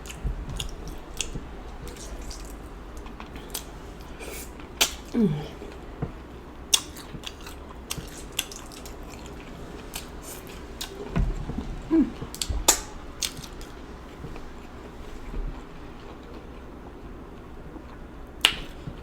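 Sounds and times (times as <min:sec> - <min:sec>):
wet chewing and lip smacks: 0:00.0 - 0:05.8, 0:06.7 - 0:11.1, 0:12.3 - 0:16.7
person humming mm: 0:05.1 - 0:05.8, 0:11.8 - 0:12.4.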